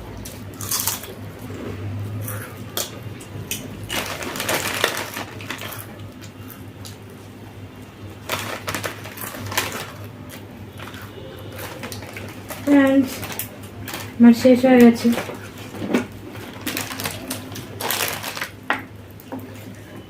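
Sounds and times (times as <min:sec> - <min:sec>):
crunching food: 0:00.1 - 0:01.2, 0:08.2 - 0:14.2, 0:16.4 - 0:18.7.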